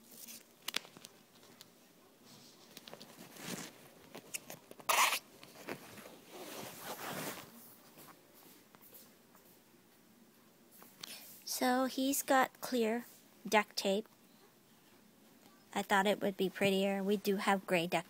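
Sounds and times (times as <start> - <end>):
duct tape ripping off roll: 3.4 - 5.3.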